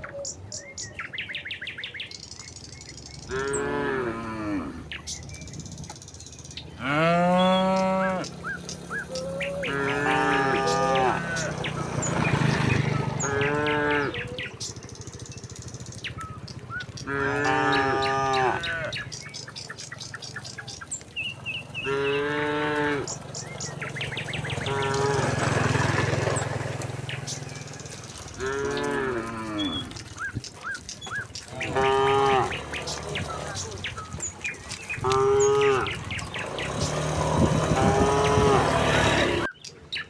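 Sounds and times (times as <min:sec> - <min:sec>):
small birds chirping faintly: 0:00.0 - 0:40.0
cattle mooing: 0:03.3 - 0:05.0, 0:06.8 - 0:14.6, 0:16.3 - 0:19.2, 0:21.3 - 0:26.2, 0:27.4 - 0:30.3, 0:31.1 - 0:39.5.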